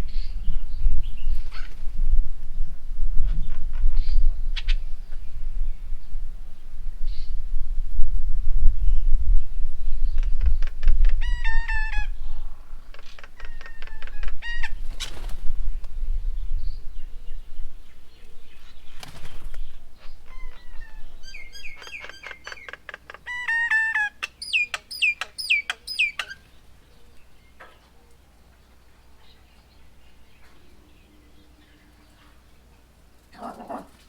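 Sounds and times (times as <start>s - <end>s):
birds chattering: 0.0s - 7.4s, 9.8s - 34.0s
wind rumble on microphone: 0.0s - 21.8s.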